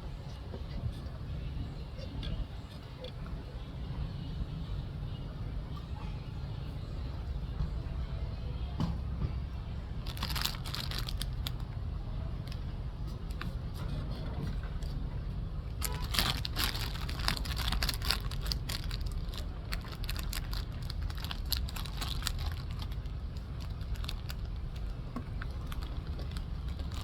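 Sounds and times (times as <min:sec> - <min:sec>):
steady low hum: 0:00.0 - 0:27.0
food wrapper crinkling: 0:10.1 - 0:11.6, 0:15.8 - 0:27.0.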